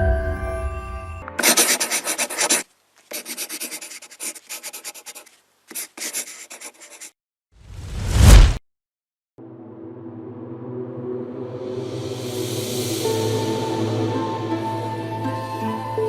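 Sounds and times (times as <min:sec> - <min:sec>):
rough rubbing strokes: 0:01.4 - 0:07.1
loud whoosh: 0:07.7 - 0:08.6.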